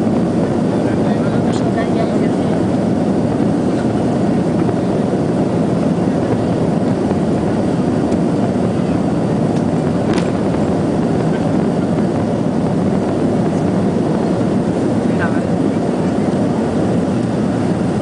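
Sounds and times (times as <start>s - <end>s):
jet engines at takeoff power: 0.0s - 18.0s.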